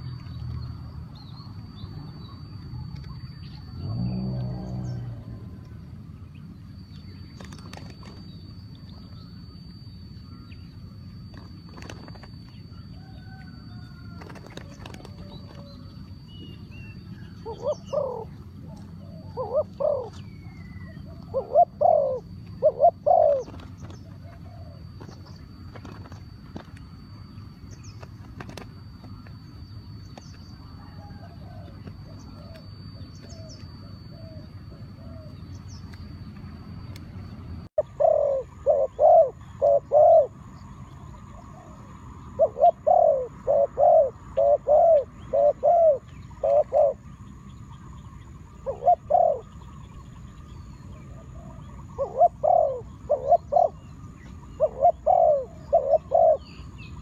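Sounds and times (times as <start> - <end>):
faint steady background noise: 0.0 - 57.0
dove cooing: 10.3 - 26.7, 30.5 - 35.7, 37.8 - 57.0.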